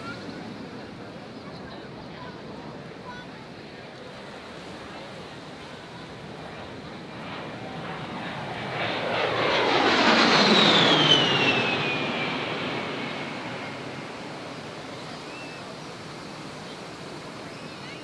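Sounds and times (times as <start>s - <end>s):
aircraft flying past: 4.2s - 18.0s.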